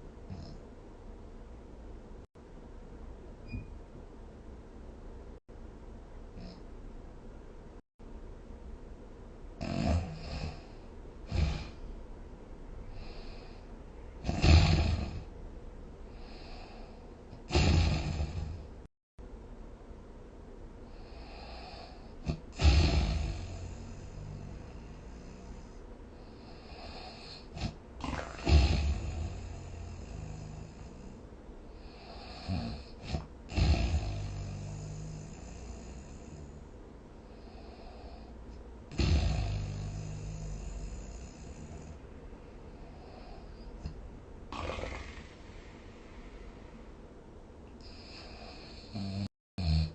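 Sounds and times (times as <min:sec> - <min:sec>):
person snoring: 0:09.6 - 0:11.9, 0:12.9 - 0:15.3, 0:16.1 - 0:18.8, 0:20.9 - 0:31.2, 0:31.8 - 0:36.7, 0:38.9 - 0:42.0, 0:42.7 - 0:46.9, 0:47.8 - 0:49.9
faint breaths: 0:12.7 - 0:15.4, 0:16.0 - 0:18.9, 0:20.8 - 0:49.3.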